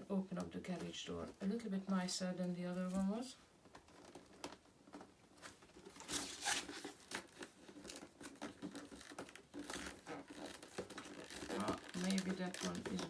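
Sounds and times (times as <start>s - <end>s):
cardboard box tearing and crinkling: 6.0s - 7.5s.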